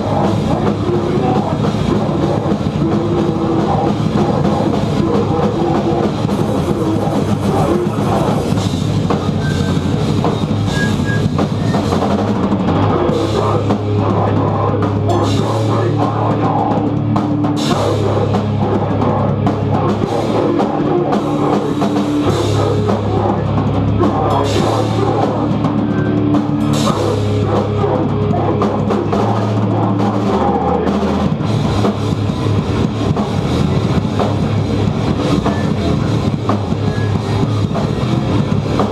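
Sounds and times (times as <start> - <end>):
drum kit with cymbals: 0.0 - 38.9
heavy rock band playing: 0.0 - 38.9.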